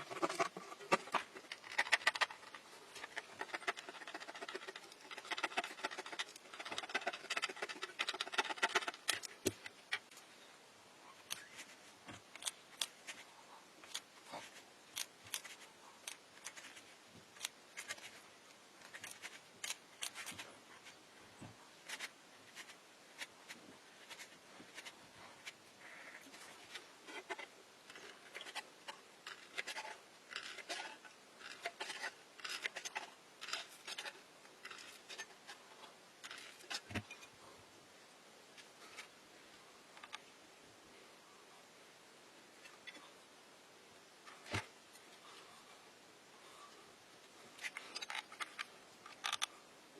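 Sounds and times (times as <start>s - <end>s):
snipping or scraping strokes: 0.0s - 10.2s, 11.2s - 18.2s, 18.8s - 21.0s, 21.8s - 35.6s.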